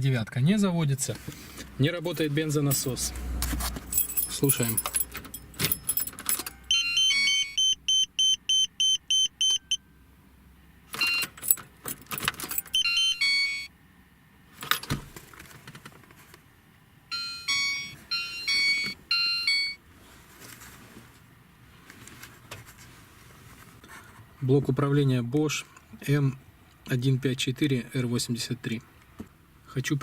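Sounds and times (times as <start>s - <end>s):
car keys jangling: 2.2s - 6.6s, 11.0s - 12.8s, 14.6s - 15.0s
high electronic beeps: 6.7s - 9.8s.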